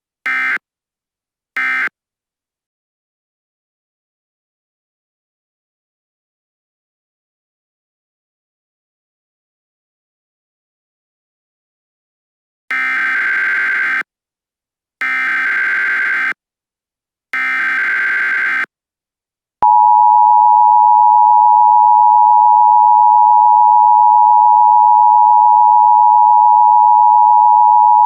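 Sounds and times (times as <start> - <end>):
two-tone attention signal: 19.6 - 28.0.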